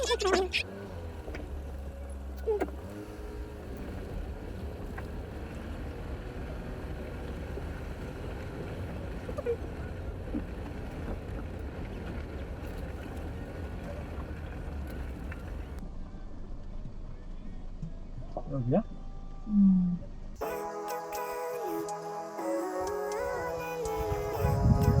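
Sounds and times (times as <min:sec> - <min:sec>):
pickup truck driving rumble: 0:00.0 - 0:15.8.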